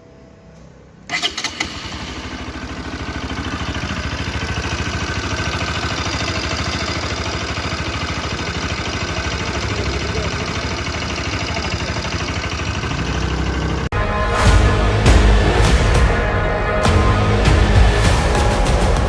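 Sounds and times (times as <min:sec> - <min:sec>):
motorcycle engine starting and idling: 0:01.0 - 0:13.9
engine ticking: 0:01.1 - 0:13.9.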